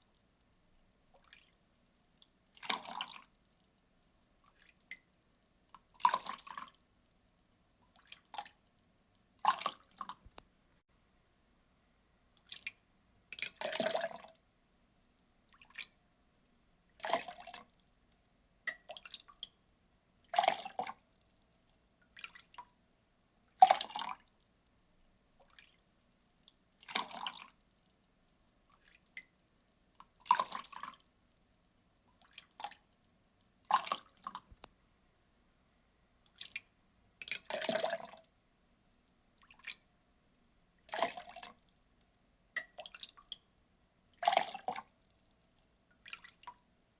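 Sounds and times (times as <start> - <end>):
water poured in splashes: 1.2 - 1.6, 2.5 - 3.5, 4.5 - 6.8, 13.3 - 14.4, 17.0 - 17.7, 25.4 - 25.8, 26.8 - 27.6, 30.0 - 31.0, 32.2 - 32.9, 37.2 - 38.3, 40.8 - 41.7, 44.2 - 44.9.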